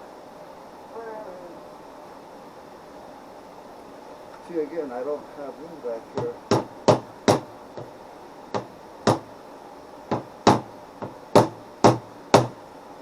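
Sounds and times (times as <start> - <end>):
hammer knocking: 6.2 - 7.9, 8.6 - 9.3, 10.1 - 12.6.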